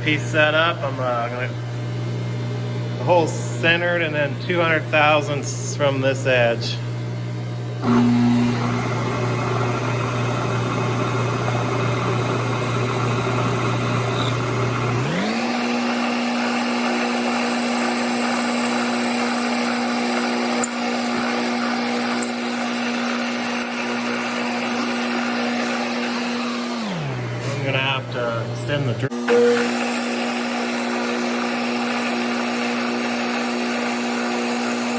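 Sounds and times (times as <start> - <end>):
milling machine drilling metal: 7.8 - 34.9.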